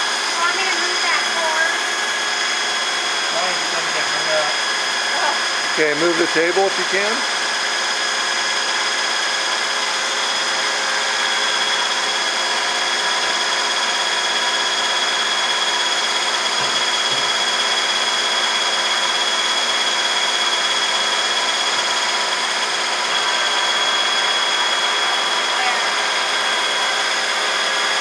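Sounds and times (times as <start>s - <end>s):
machine whining tones: 0.0s - 28.0s
milling machine running: 0.0s - 28.0s.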